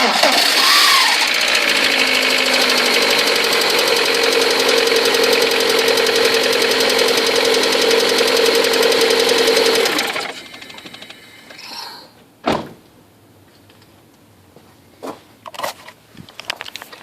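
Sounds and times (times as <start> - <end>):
car engine running: 0.0 - 11.5
loud thud: 12.4 - 12.8.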